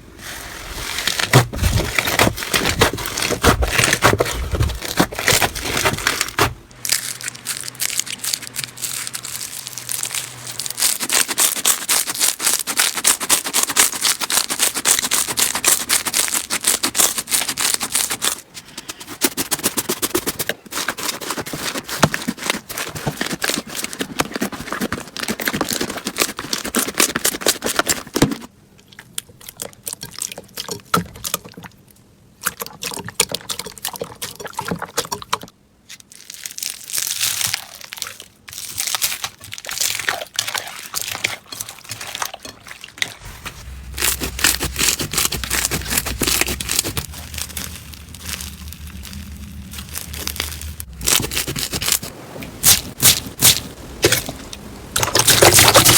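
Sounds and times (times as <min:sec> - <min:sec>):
slime crackling and crinkling: 0:00.2 - 0:28.5, 0:35.8 - 0:55.9
low steady hum: 0:42.5 - 0:55.9.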